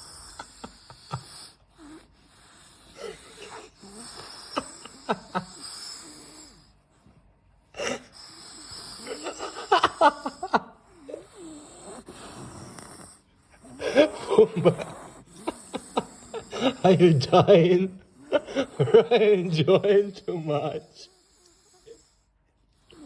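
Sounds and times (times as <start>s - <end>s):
dog snoring heavily: 11.1s - 17.6s.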